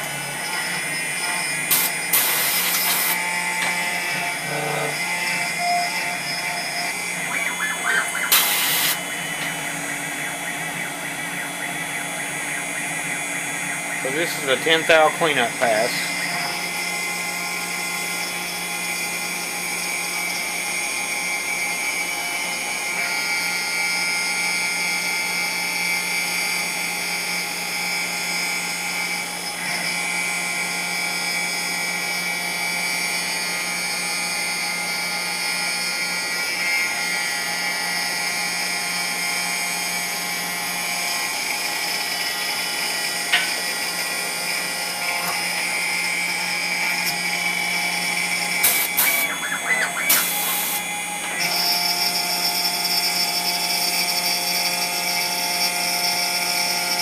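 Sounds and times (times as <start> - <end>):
milling spindle high whine: 0.0 - 57.0.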